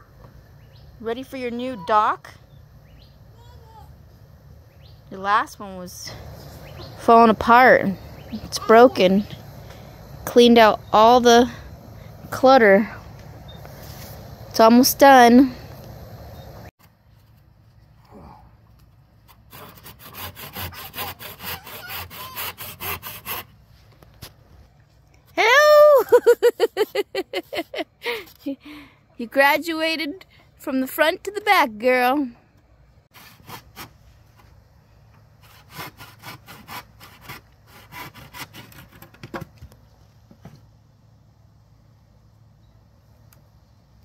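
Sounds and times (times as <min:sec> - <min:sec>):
hand saw cutting wood: 0:19.3 - 0:23.5, 0:33.1 - 0:34.0, 0:35.4 - 0:39.3.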